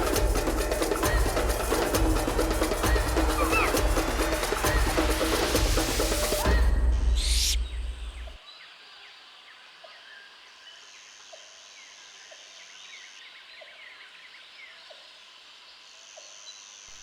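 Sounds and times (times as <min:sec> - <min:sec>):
percussive music: 0:00.0 - 0:08.4
birds chirping and calling: 0:02.8 - 0:04.2, 0:07.2 - 0:08.4.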